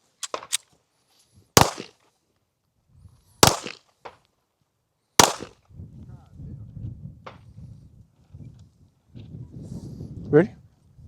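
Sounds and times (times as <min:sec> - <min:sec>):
gunshots with echo: 0:01.6 - 0:01.9, 0:03.4 - 0:03.8, 0:05.2 - 0:05.5.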